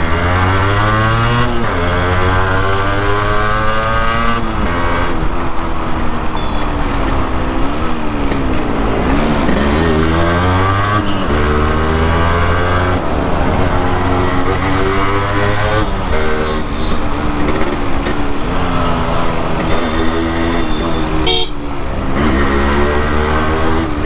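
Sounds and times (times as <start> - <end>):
motorcycle engine running: 12.5 - 23.1.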